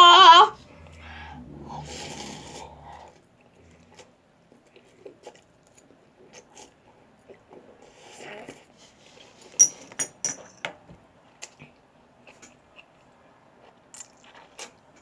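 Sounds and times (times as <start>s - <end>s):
low steady hum: 0.0s - 7.7s.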